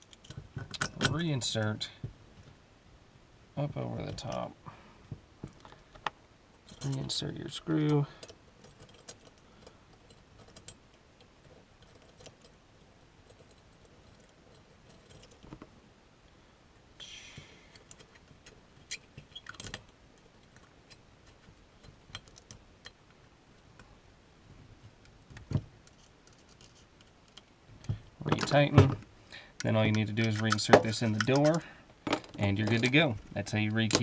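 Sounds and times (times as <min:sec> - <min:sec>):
metal screw clicks and scrapes: 0:07.8 - 0:12.6, 0:17.7 - 0:23.0, 0:25.8 - 0:27.5, 0:29.6 - 0:33.0.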